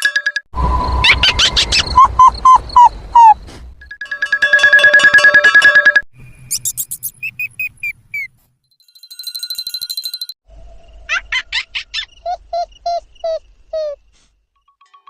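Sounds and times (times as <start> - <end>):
high electronic chirps: 4.6 - 8.0
squeaky electronic chirps: 4.6 - 8.3.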